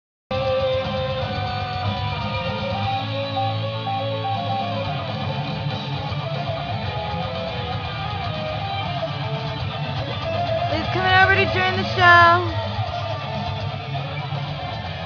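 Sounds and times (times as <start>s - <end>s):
bass line: 10.7s - 12.6s.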